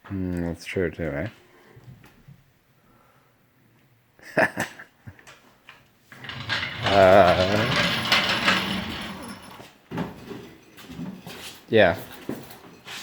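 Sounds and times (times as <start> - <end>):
car rough rolling noise: 6.1 - 9.7
wavering creak: 6.2 - 9.6.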